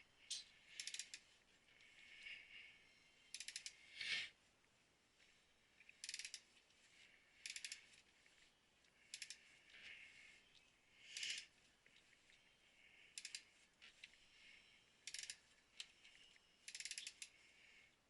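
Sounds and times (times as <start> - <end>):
soft rasping: 0.0 - 18.0
rapid mechanical clicks: 0.3 - 1.2, 3.4 - 3.8, 7.5 - 7.8, 11.2 - 11.5, 15.1 - 15.9, 16.7 - 17.4.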